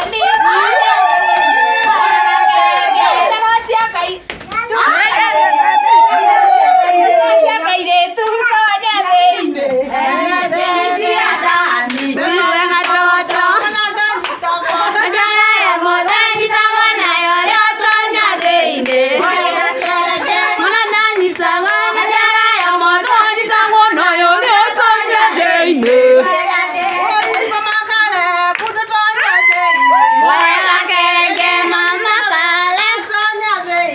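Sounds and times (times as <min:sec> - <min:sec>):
voices singing lively song: 0:00.0 - 0:33.9
hand clapping: 0:11.5 - 0:16.9, 0:26.8 - 0:28.9.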